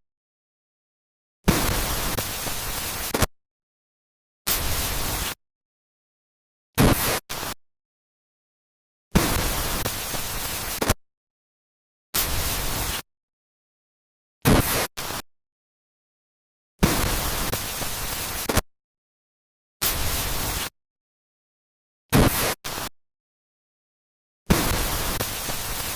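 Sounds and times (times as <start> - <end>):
harsh static noise bursts: 1.5 - 3.3, 4.5 - 5.4, 6.8 - 7.6, 9.2 - 11.0, 12.2 - 13.1, 14.4 - 15.2, 16.8 - 18.6, 19.8 - 20.8, 22.1 - 22.9, 24.5 - 25.9.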